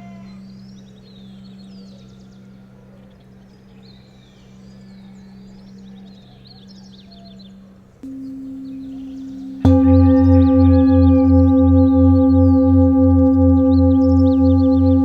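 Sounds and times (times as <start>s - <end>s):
steady low hum: 8.0s - 15.0s.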